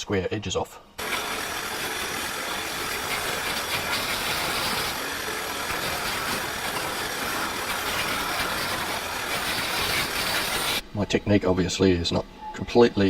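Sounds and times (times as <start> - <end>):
wood lathe with chisel scraping: 1.0 - 10.8.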